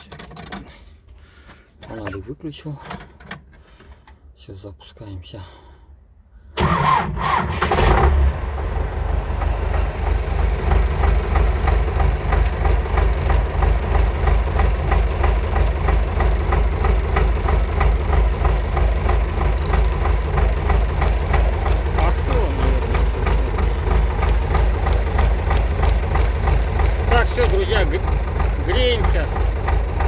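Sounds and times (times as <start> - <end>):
tractor engine starting and idling: 6.6 - 30.0.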